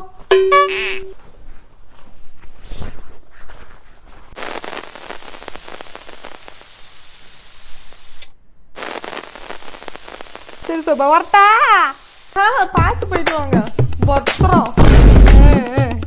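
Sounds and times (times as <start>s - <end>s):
heavy rain hissing: 4.4s - 12.8s.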